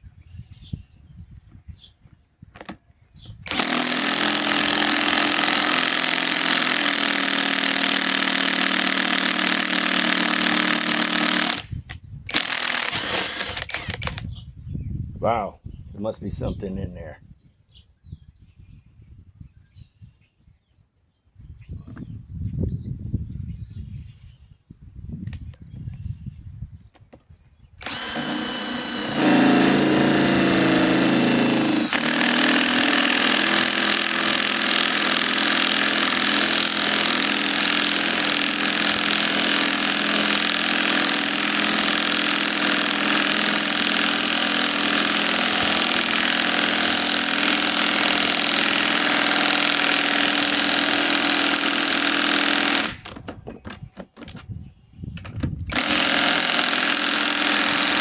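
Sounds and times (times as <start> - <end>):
impact wrench hammering: 3.5 - 11.6, 12.3 - 14.2.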